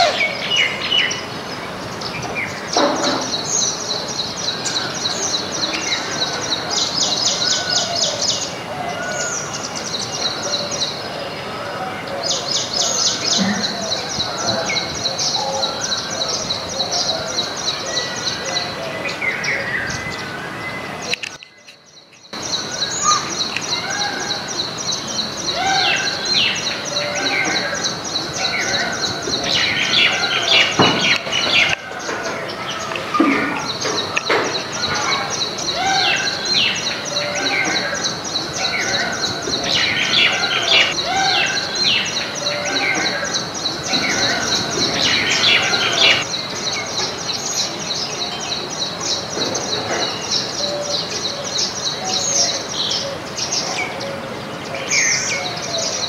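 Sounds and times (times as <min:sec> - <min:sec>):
small birds chirping: 0:09.2 - 0:54.0.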